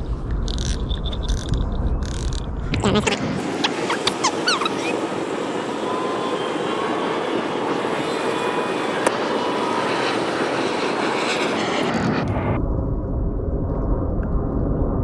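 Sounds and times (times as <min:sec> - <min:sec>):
airplane engine rushing: 0:00.0 - 0:12.6
faint whining tones: 0:02.7 - 0:12.6
low rumble: 0:12.1 - 0:15.0.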